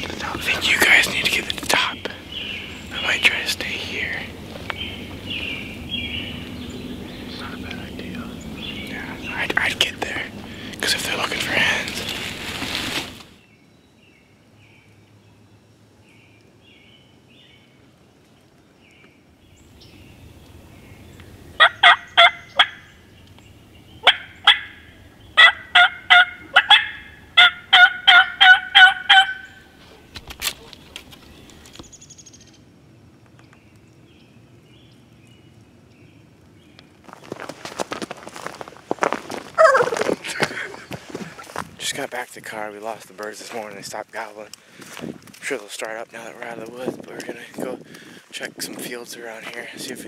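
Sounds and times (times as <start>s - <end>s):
wild turkey yelping: 21.6s - 22.9s, 24.0s - 30.7s, 39.6s - 40.8s.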